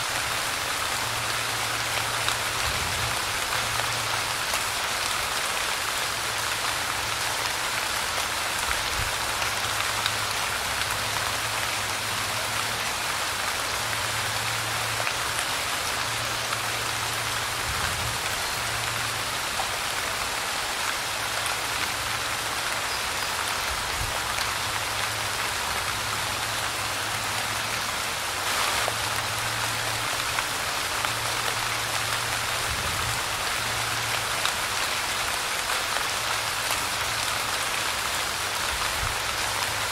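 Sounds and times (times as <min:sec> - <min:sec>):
light rain pattering: 0:00.0 - 0:39.9.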